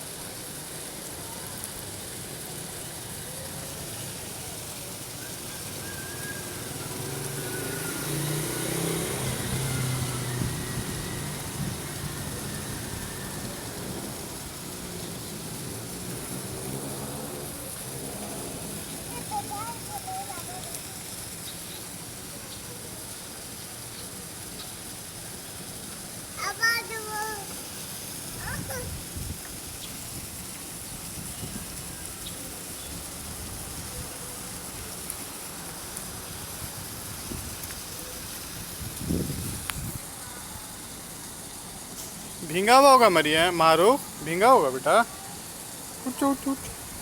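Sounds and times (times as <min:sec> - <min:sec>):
steady rain: 0:00.0 - 0:47.0
vehicle engine hum: 0:03.3 - 0:19.9.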